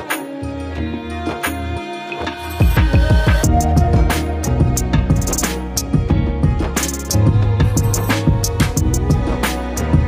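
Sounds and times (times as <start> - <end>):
pulsing bass: 2.7 - 10.0.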